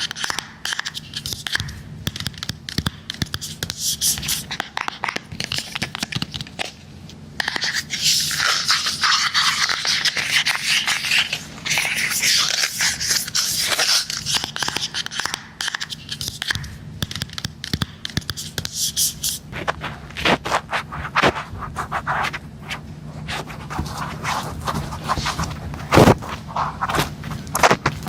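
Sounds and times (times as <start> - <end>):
scraping on hard device: 18.2 - 28.0.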